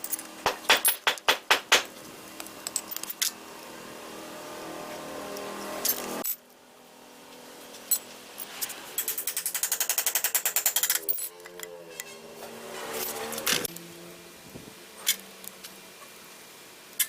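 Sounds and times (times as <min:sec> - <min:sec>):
sharp knocks: 0:00.5 - 0:01.9.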